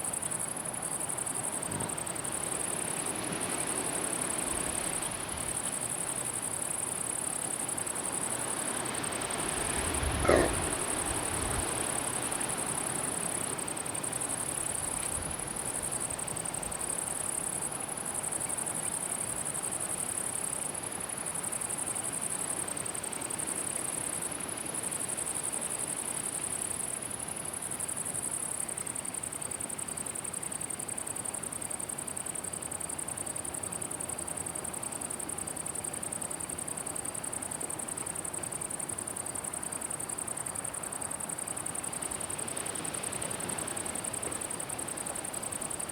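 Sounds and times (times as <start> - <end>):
insects buzzing: 0.1 - 19.4.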